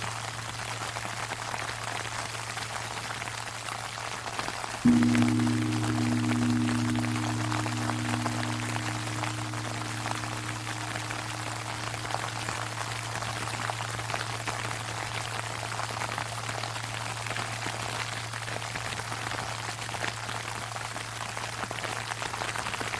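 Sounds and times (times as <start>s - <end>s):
temple bell humming: 4.9s - 14.5s.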